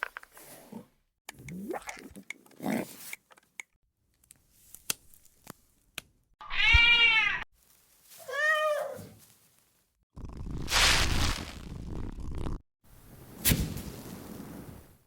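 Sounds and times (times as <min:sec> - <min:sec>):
cat meowing: 0:06.4 - 0:07.4, 0:08.2 - 0:09.2.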